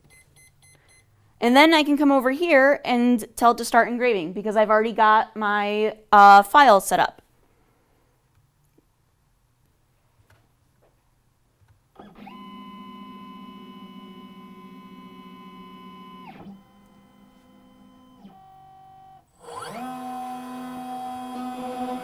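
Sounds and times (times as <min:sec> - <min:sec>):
milling machine motor whine: 0:11.9 - 0:22.0.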